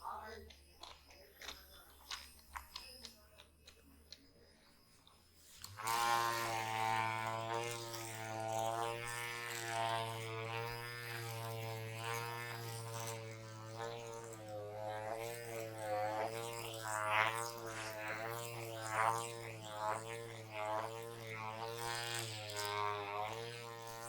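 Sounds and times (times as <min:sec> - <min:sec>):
didgeridoo drone: 0:05.4 - 0:24.0.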